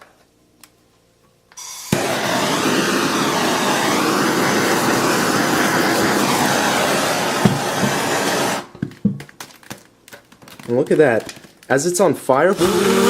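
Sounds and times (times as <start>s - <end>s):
loud rushing hiss: 1.6s - 8.7s.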